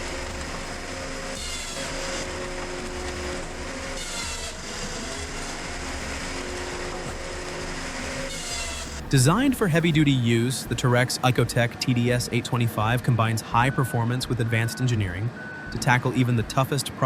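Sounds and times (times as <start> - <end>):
high-pitched machine rasp: 0.0 - 10.8
machinery engine hum: 0.0 - 17.0.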